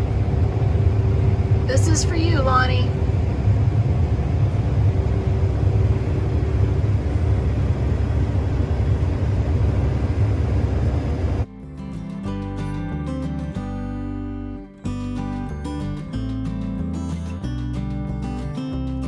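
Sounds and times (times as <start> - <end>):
combine harvester rumbling: 0.0 - 11.4
acoustic guitar music: 0.6 - 3.2, 11.5 - 19.0.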